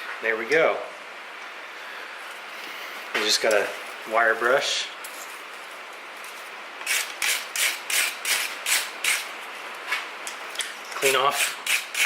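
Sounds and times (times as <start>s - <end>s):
wire brush scrubbing steel: 6.8s - 9.3s, 11.0s - 12.0s.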